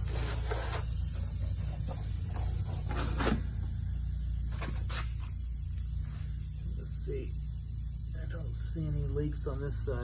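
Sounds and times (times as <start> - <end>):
electrical mains hum: 0.0 - 10.0.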